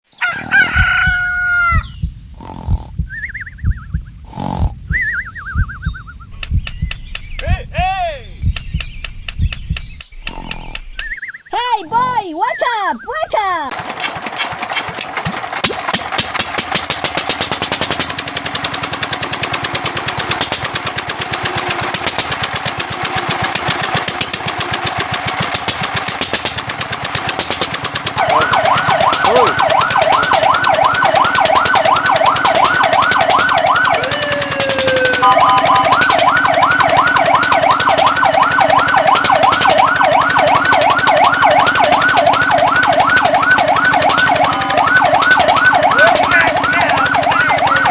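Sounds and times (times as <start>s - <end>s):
fire truck siren yelping: 0.2s - 1.8s, 17.2s - 47.9s
engine knocking: 13.7s - 47.9s.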